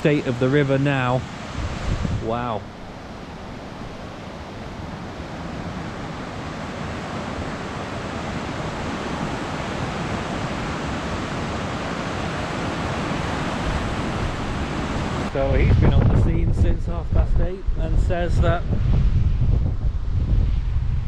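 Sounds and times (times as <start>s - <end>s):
floodwater rushing: 0.0s - 15.4s
wind: 0.0s - 21.0s.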